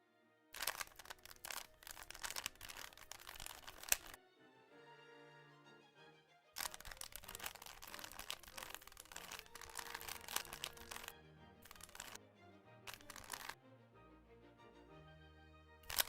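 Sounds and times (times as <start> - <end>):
rapid plastic clicking: 0.6 - 4.2, 6.6 - 12.2, 12.9 - 13.6
background music: 4.2 - 16.0.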